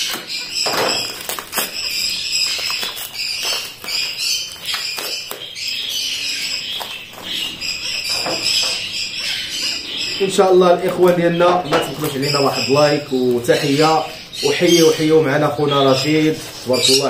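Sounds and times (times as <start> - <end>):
clicks and rustles of unwrapping: 0.0 - 8.9
cage birds chirping: 0.0 - 17.0.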